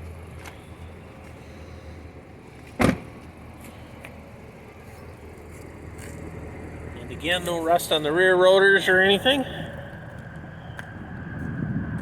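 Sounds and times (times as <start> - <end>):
car engine idling: 0.0 - 12.0
loud thump: 2.8 - 3.1.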